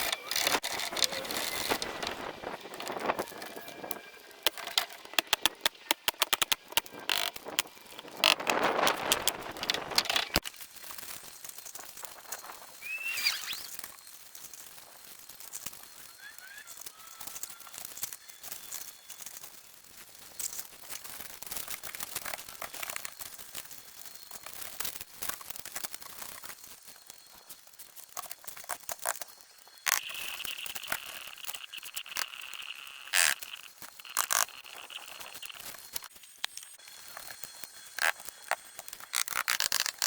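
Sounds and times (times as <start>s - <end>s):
crinkling handling noise: 0.0s - 40.0s
clicks and taps: 4.5s - 10.4s.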